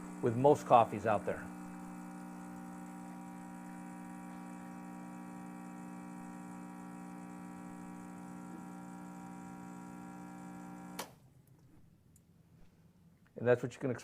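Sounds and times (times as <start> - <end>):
espresso machine pump buzzing: 0.0 - 11.1.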